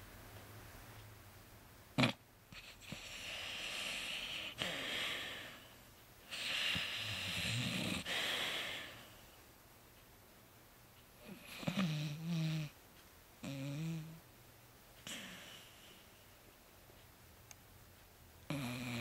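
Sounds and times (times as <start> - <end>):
dog snoring: 2.0 - 5.6, 6.3 - 9.1, 11.2 - 12.8, 13.4 - 14.2, 18.5 - 19.0.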